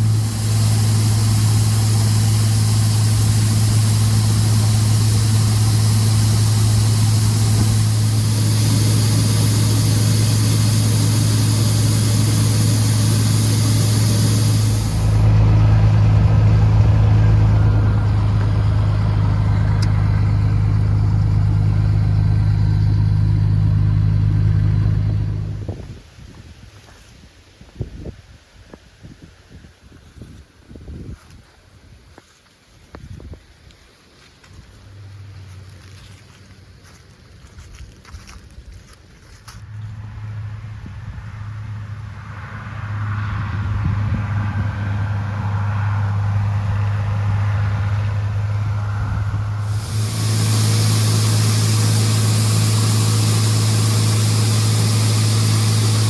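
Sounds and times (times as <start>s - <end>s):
high hiss: 0.0s - 25.8s, 46.4s - 56.0s
combine harvester engine hum: 0.0s - 26.2s, 33.8s - 56.0s.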